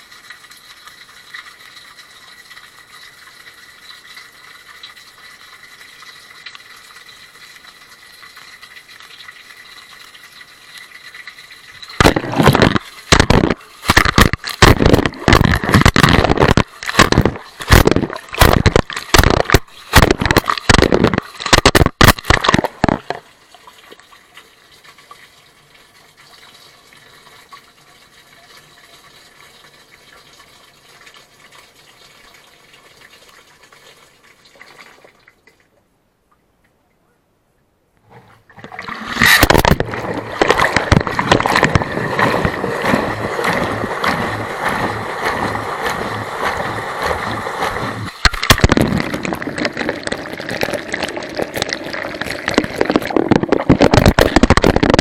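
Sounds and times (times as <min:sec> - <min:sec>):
faint rush of water: 0:38.0 - 0:55.0
washing machine sloshing churn: 0:38.6 - 0:55.0.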